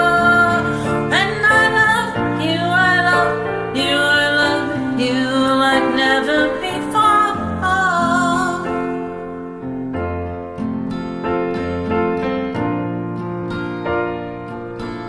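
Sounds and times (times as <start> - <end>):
woman singing a slow ballad: 0.0 - 9.4
soft instrumental backing track: 0.0 - 15.0.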